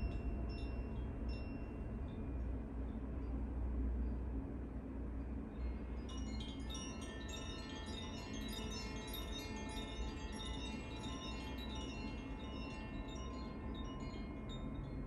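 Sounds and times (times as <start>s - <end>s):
carillon chimes ringing: 6.0s - 15.0s.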